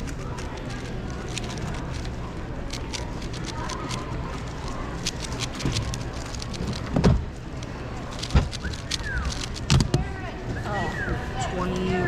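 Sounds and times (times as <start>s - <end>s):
plastic cube clicking: 0.0s - 7.0s, 7.6s - 9.9s
steady hall hum: 0.0s - 12.0s.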